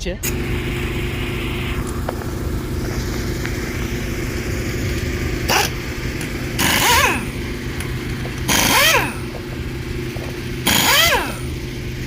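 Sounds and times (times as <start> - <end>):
loud bursts of noise: 0.0 - 12.0
vehicle engine idling: 0.0 - 12.0.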